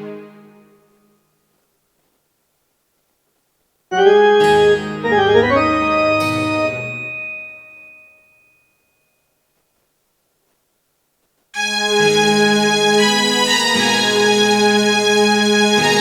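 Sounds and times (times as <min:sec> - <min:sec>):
electronic keyboard notes with pitch glide: 0:03.9 - 0:07.3.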